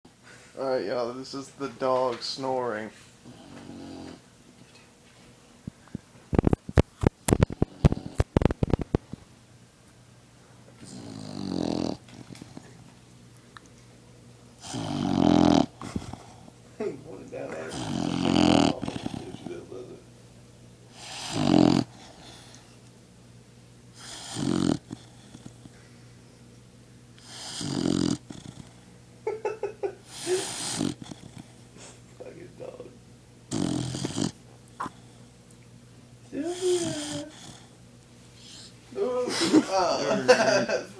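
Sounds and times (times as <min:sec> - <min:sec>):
dog snoring: 0:03.2 - 0:04.2, 0:07.3 - 0:09.1, 0:10.8 - 0:12.8, 0:14.6 - 0:16.5, 0:17.5 - 0:19.8, 0:20.9 - 0:22.7, 0:24.0 - 0:25.7, 0:27.2 - 0:28.9, 0:30.0 - 0:32.0, 0:33.5 - 0:35.3, 0:36.3 - 0:37.8, 0:38.4 - 0:38.8.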